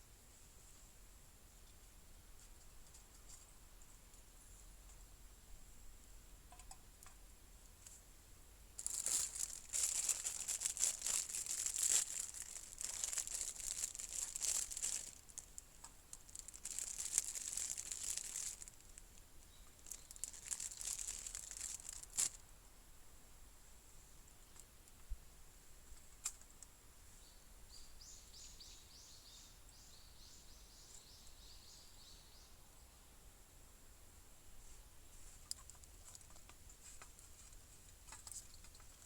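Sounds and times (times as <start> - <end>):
plastic wrapping crinkling: 8.8 - 19.0, 19.7 - 22.4.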